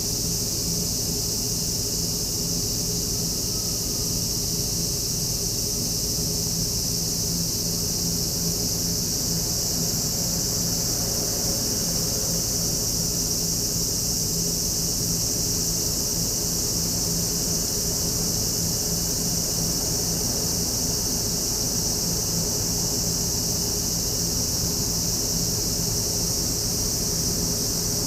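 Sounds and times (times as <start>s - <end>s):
high-pitched insect chorus: 0.0s - 28.0s.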